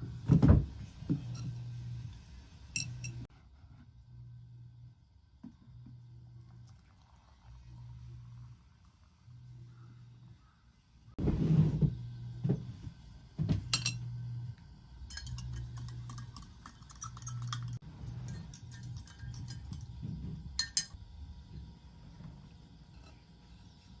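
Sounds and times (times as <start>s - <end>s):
metal clinking on glass: 2.8s - 3.2s, 15.1s - 20.0s, 20.6s - 21.0s
kitchenware clattering: 13.6s - 14.1s, 15.1s - 21.0s.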